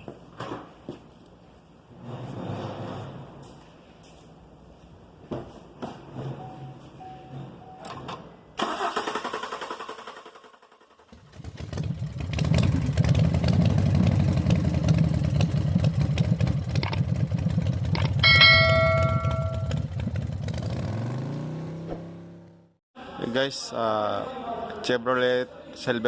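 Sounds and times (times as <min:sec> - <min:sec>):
dashboard warning chime: 0:06.4 - 0:07.9, 0:18.0 - 0:19.8.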